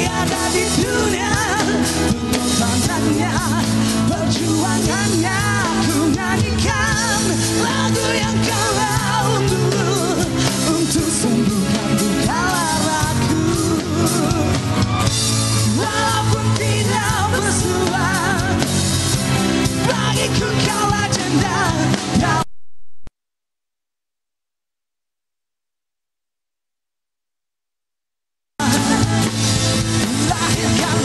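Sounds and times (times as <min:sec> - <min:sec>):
person singing: 0:00.0 - 0:14.7, 0:28.6 - 0:31.0
rock band playing: 0:00.0 - 0:22.4, 0:28.6 - 0:31.0.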